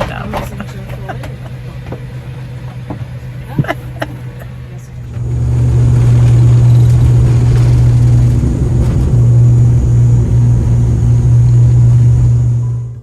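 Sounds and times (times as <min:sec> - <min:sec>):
airliner engines droning: 0:00.0 - 0:13.0.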